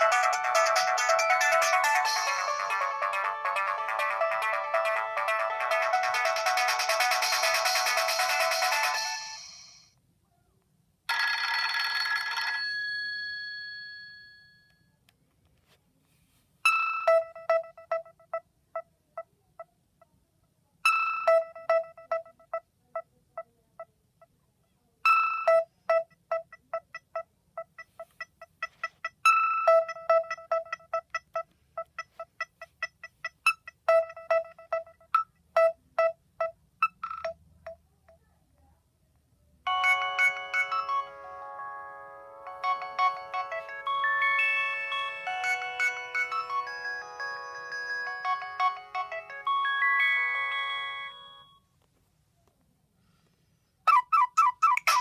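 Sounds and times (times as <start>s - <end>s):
phone ringtone chord: 0.0s - 9.8s, 11.1s - 14.8s, 39.7s - 51.6s
staccato phone ringtone: 0.0s - 9.8s, 11.1s - 14.2s, 16.7s - 18.4s, 25.1s - 37.4s, 39.7s - 51.6s.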